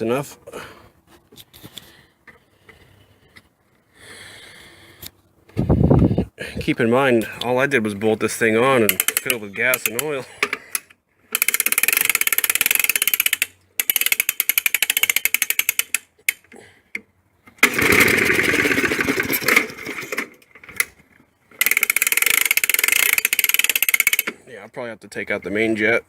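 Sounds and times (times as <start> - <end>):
small engine sputtering: 11.4 - 16.1, 17.6 - 21.0, 21.6 - 24.4.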